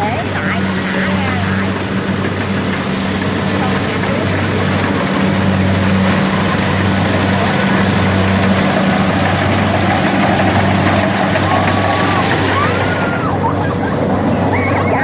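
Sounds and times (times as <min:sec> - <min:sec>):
combine harvester engine humming: 0:00.0 - 0:15.0.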